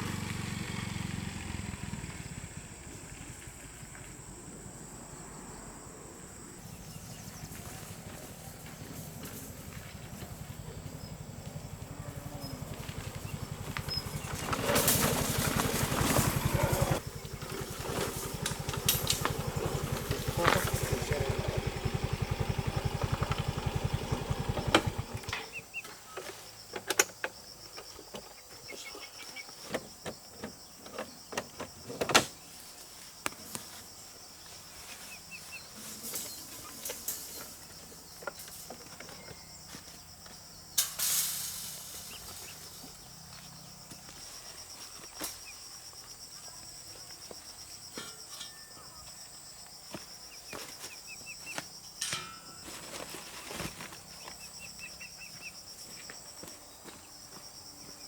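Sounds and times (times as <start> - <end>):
small engine running: 0.0 - 4.0, 6.6 - 25.6.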